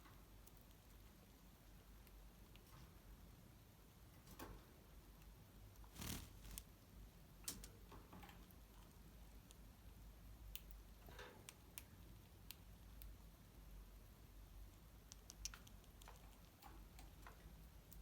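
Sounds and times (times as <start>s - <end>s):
faint clicks of birds moving: 14.7s - 18.0s.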